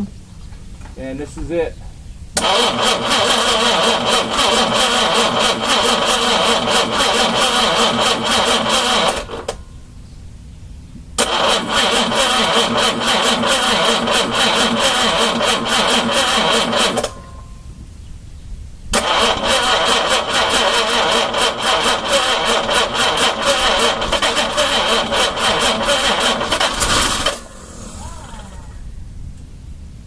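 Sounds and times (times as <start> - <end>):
car engine cranking on starter: 2.4 - 9.8, 11.2 - 17.5, 18.9 - 29.0.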